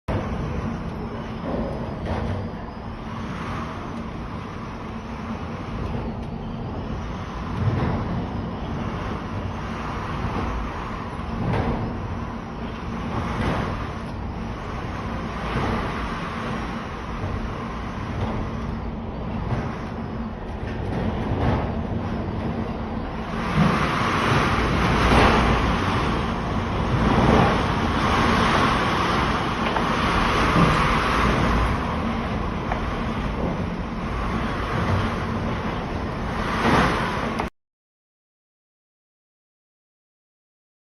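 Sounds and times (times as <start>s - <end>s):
strong wind gusting: 0.1s - 37.5s.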